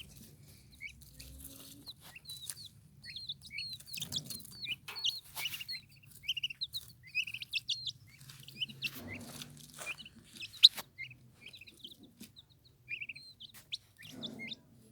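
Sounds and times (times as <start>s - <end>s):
turkey poults peeping: 0.0s - 14.8s.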